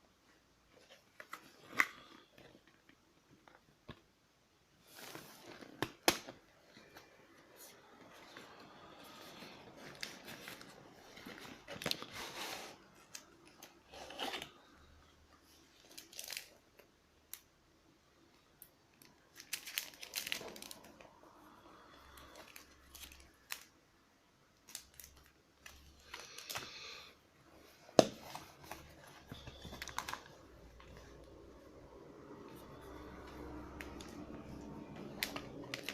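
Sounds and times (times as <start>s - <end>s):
packaging rustling and tearing: 4.9s - 14.8s, 15.4s - 16.9s, 19.0s - 21.1s, 22.1s - 23.7s, 24.6s - 27.0s, 27.7s - 35.9s.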